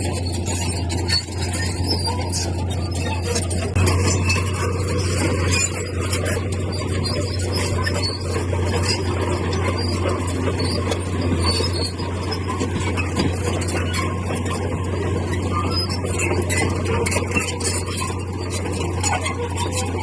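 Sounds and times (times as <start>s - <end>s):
heavy machine engine drone: 0.0s - 20.0s.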